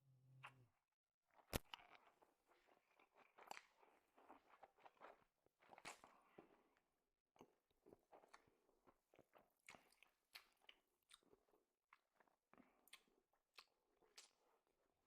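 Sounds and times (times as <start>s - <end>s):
person chewing: 1.6s - 6.7s, 12.2s - 14.6s.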